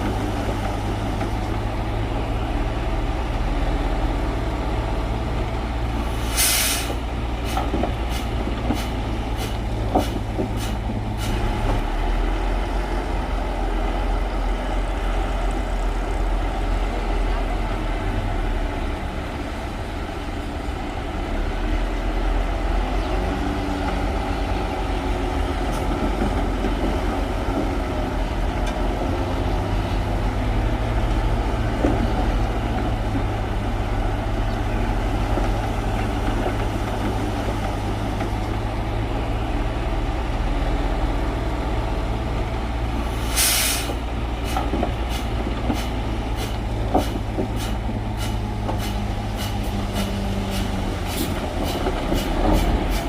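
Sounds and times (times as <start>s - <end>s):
bulldozer diesel engine: 0.0s - 53.0s
short hiss: 6.2s - 11.4s, 43.2s - 44.0s.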